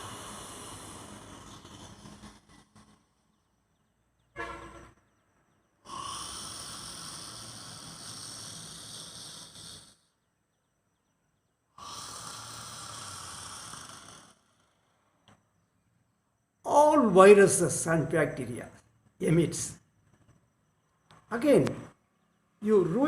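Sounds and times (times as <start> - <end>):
man breathing forcefully: 0.0 - 3.0, 5.9 - 10.1.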